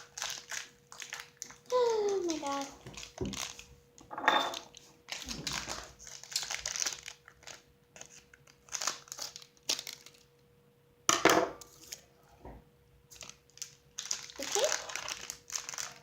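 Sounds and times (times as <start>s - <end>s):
packaging crinkling: 0.0s - 3.7s, 4.5s - 10.3s, 13.1s - 16.0s.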